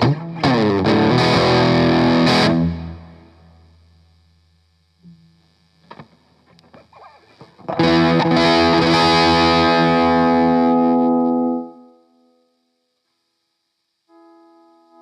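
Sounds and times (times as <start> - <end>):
overdriven guitar chord ringing: 0.0 - 4.0, 7.7 - 12.6.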